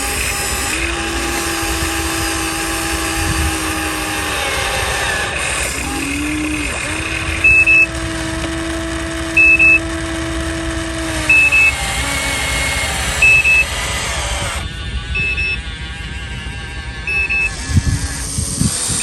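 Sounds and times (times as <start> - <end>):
electric motor whine: 0.0 - 19.0
high double warning beep: 7.2 - 8.0, 9.4 - 9.9, 11.2 - 18.0.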